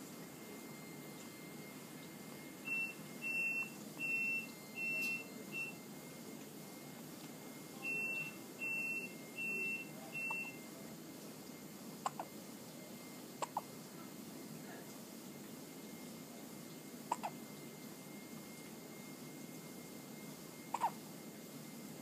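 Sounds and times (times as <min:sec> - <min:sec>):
electronic beeper beeps: 0:07.8 - 0:10.6
child hiccuping: 0:12.0 - 0:12.3, 0:13.4 - 0:13.7, 0:17.1 - 0:17.4, 0:20.7 - 0:21.0.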